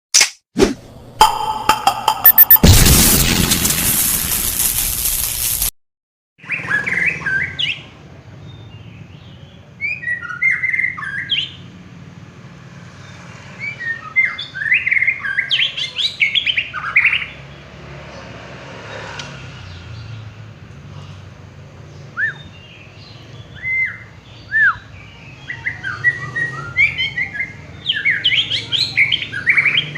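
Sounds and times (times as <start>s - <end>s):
songbird whistling: 22.2s - 22.5s.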